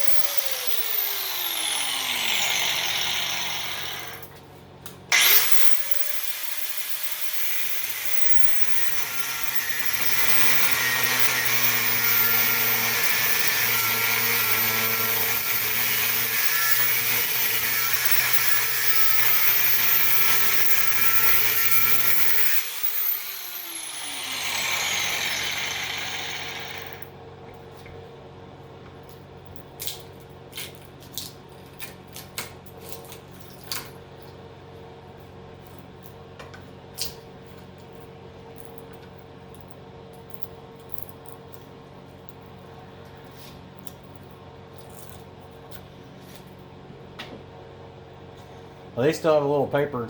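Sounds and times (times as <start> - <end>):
cutoff wheel cutting steel: 0.0 - 4.3, 5.1 - 27.1.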